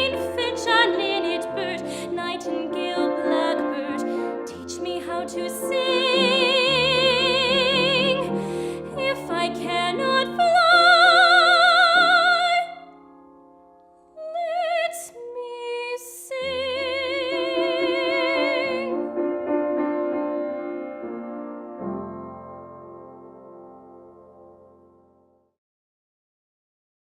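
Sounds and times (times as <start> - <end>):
young woman singing soprano: 0.0 - 12.9, 14.2 - 18.9
piano accompaniment: 0.0 - 25.4.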